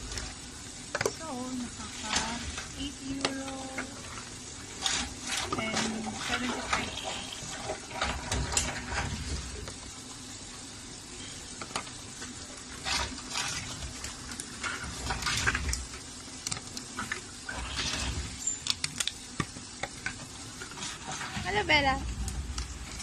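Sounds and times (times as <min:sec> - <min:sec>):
faint steady hum: 0:00.0 - 0:23.0
bottles and cans rattling in machine: 0:04.8 - 0:09.6
machine low rumble: 0:21.3 - 0:23.0.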